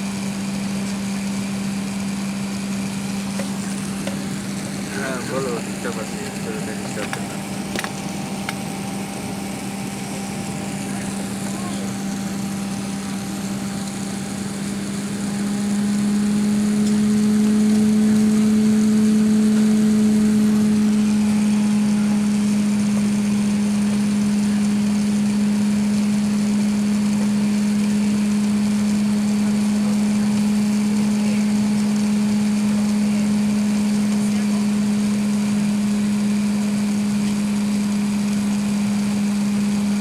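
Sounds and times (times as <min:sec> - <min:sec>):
aircraft cabin hum: 0:02.9 - 0:28.0.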